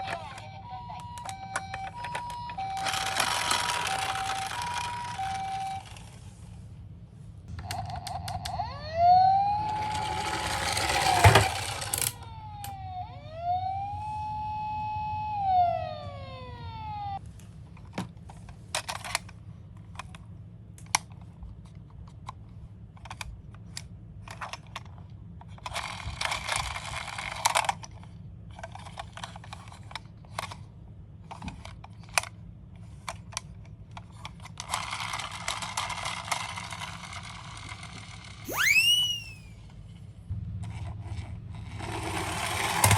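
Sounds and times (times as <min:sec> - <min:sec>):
toy electronic siren wailing: 0:00.0 - 0:06.1, 0:07.7 - 0:17.2, 0:38.5 - 0:39.6
plastic toy cars clicking: 0:00.0 - 0:06.2, 0:09.5 - 0:12.8, 0:17.8 - 0:22.4, 0:23.0 - 0:38.4, 0:40.8 - 0:42.9
toy cars rattling down slope: 0:01.4 - 0:06.3, 0:07.6 - 0:12.2, 0:25.5 - 0:27.8, 0:34.0 - 0:39.4, 0:40.8 - 0:42.9.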